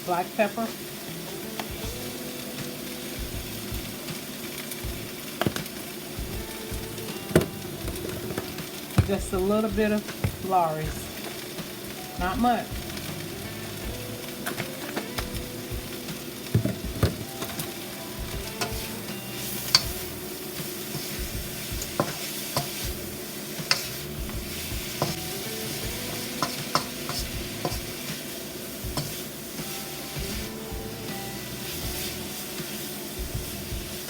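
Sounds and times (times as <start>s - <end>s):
pot sizzling: 0.0s - 34.0s
spoon clinking against pot: 26.1s - 27.9s.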